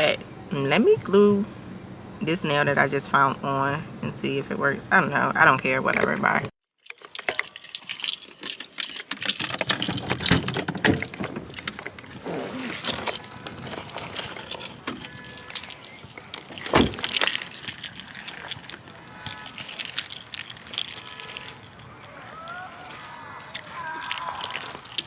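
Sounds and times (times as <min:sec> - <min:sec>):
small clicks and rustles: 0:06.8 - 0:22.3, 0:23.5 - 0:25.0
keys jangling and clattering: 0:06.8 - 0:22.5, 0:23.4 - 0:25.0.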